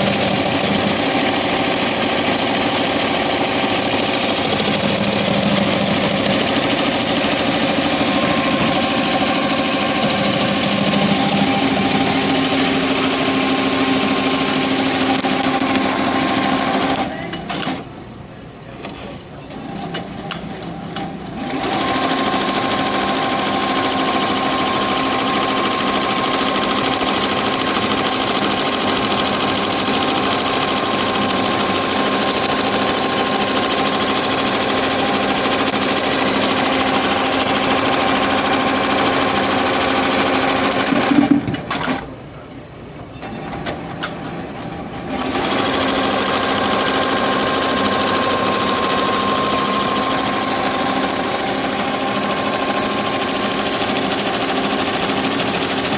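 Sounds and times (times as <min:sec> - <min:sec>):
embroidery machine rattling: 0:00.0 - 0:18.3.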